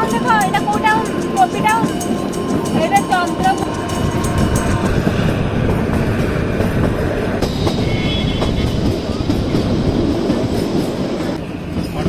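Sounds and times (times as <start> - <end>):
high-pitched tone: 0.0 - 5.0
train carriages rumbling and rattling: 0.0 - 12.0.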